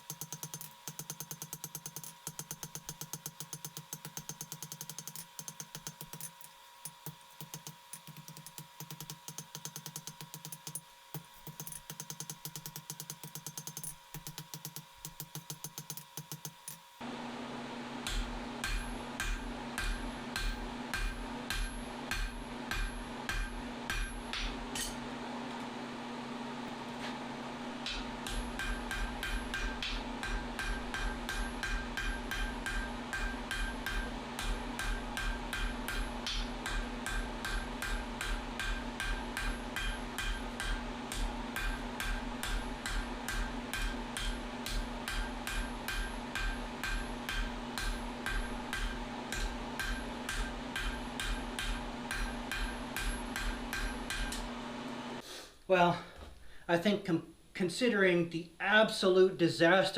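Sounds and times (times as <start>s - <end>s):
hammer striking hot steel on anvil: 18.0s - 25.1s, 27.8s - 54.5s.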